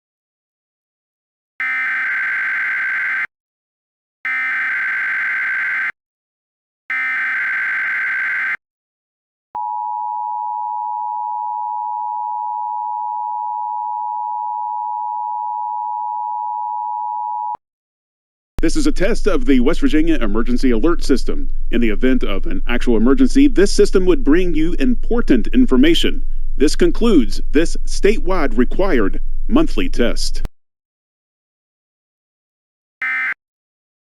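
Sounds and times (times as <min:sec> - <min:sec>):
buzzing digital data tones: 0:01.6 - 0:03.3, 0:04.3 - 0:06.0, 0:06.9 - 0:08.6, 0:33.0 - 0:33.4
two-tone attention signal: 0:01.6 - 0:03.3, 0:04.3 - 0:05.9, 0:06.9 - 0:08.6, 0:33.0 - 0:33.4.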